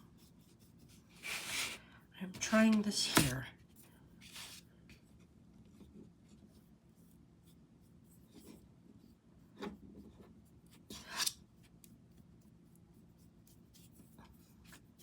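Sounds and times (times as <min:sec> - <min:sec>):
paintbrush swishing on canvas: 0:01.2 - 0:01.8.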